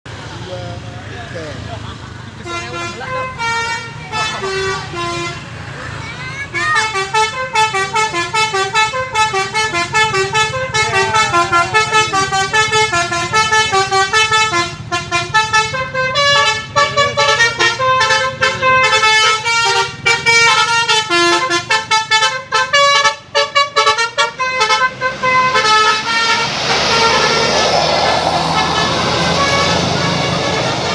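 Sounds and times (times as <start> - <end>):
air horn melody: 2.5 - 5.4, 6.6 - 30.9
even rushing noise: 25.0 - 30.9.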